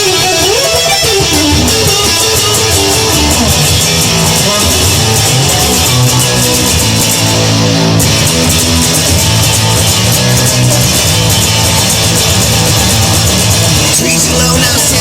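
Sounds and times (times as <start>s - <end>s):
instrumental rock music: 0.0s - 15.0s.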